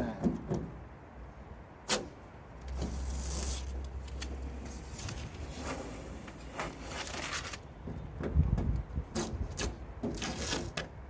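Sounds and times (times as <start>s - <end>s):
masking tape peeling: 1.8s - 7.7s, 9.1s - 10.9s.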